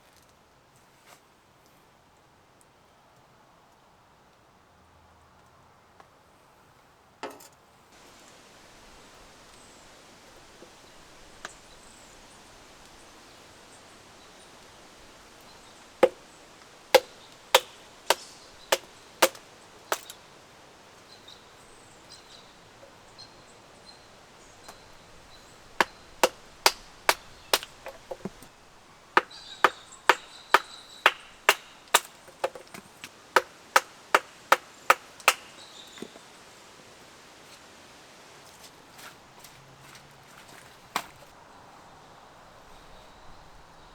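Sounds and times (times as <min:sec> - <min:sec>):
faint steady hiss: 0:00.0 - 0:43.9
hatchet chopping wood: 0:16.0 - 0:20.2, 0:24.7 - 0:28.5, 0:29.1 - 0:36.1.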